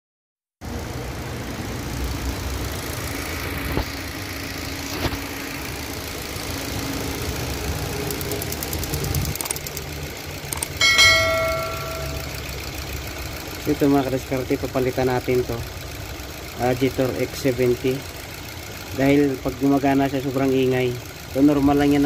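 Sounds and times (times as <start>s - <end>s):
car engine idling: 0.6s - 22.0s
purge valve ticking: 7.0s - 13.7s
short pitched tone: 10.8s - 12.6s.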